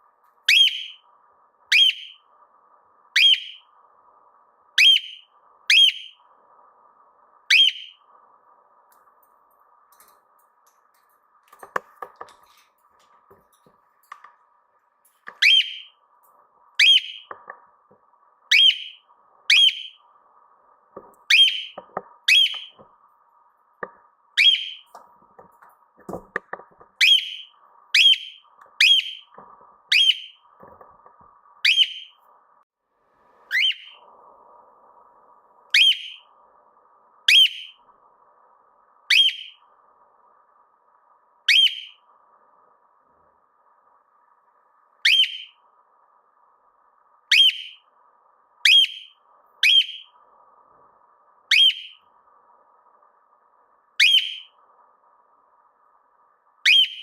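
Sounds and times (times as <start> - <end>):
faint steady hum: 0.0 - 57.0
cockatiel whistled calls: 0.5 - 1.0, 1.7 - 2.2, 3.2 - 3.7, 4.8 - 6.2, 7.5 - 8.0, 15.4 - 16.0, 16.8 - 17.3, 18.5 - 20.0, 21.3 - 22.8, 24.4 - 24.9, 27.0 - 29.3, 29.9 - 30.4, 31.6 - 32.2, 33.5 - 34.0, 35.7 - 36.3, 37.3 - 37.8, 39.1 - 39.6, 41.5 - 42.0, 45.0 - 45.6, 47.3 - 47.8, 48.6 - 50.2, 51.5 - 52.0, 54.0 - 54.6, 56.6 - 57.0.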